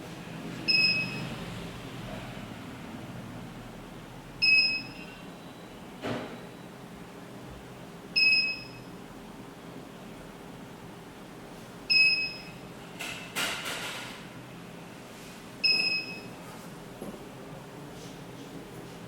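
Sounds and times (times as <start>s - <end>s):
alarm keypad beeps: 0.7s - 1.3s, 4.4s - 5.2s, 8.2s - 8.9s, 11.9s - 12.6s, 15.6s - 16.3s.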